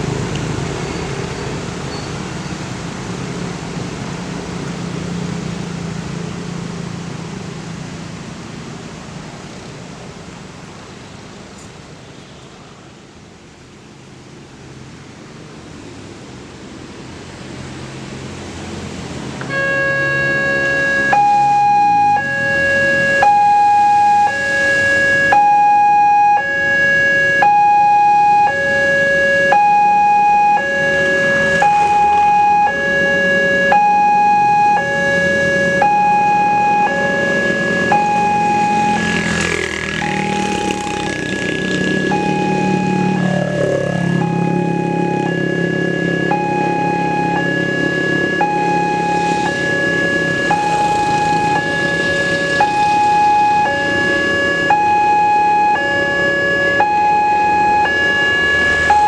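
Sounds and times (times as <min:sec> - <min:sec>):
two-tone level-crossing alarm: 0:19.5 - 0:59.0.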